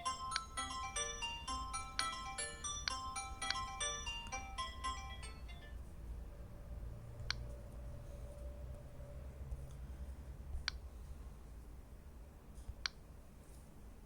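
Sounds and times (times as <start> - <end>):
taps on a tablet: 0.0 - 5.1
low steady hum: 0.0 - 14.0.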